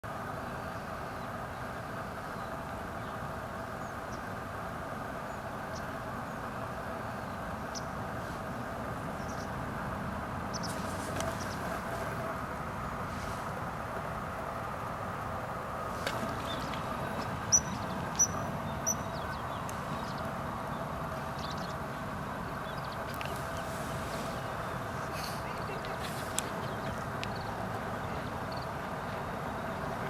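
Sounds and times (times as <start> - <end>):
rushing outdoor background noise: 0.0 - 30.0
high bird chirps: 16.4 - 20.2.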